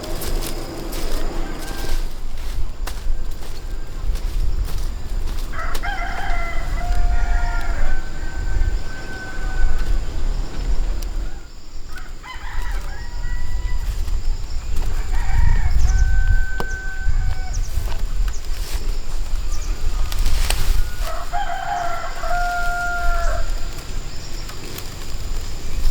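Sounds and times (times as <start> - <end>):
steady low rumble: 0.0 - 11.9
rooster crowing: 0.0 - 18.0, 19.5 - 24.1.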